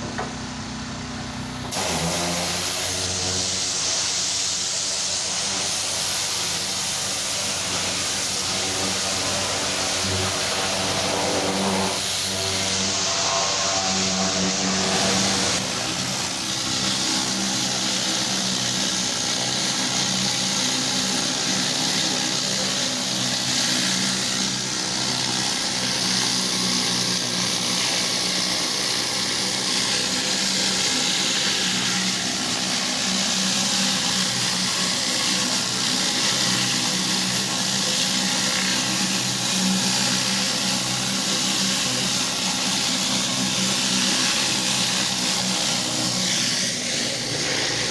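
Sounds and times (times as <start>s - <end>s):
pressure washer engine running: 0.0s - 47.9s
high-pressure water spray hissing: 1.7s - 47.9s.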